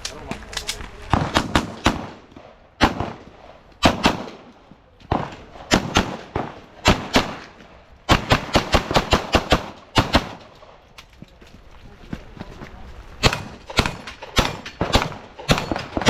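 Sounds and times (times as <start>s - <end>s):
pistol shots: 1.1s - 4.5s, 5.1s - 10.8s, 13.2s - 16.0s.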